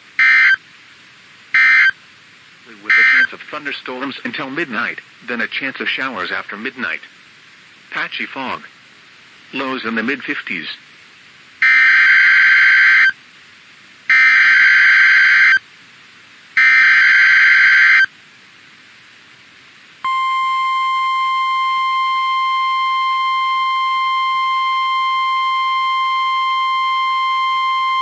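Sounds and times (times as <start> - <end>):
data tone bursts: 0.2 - 0.6, 1.6 - 2.0, 2.9 - 3.4, 14.1 - 15.6, 20.1 - 28.0.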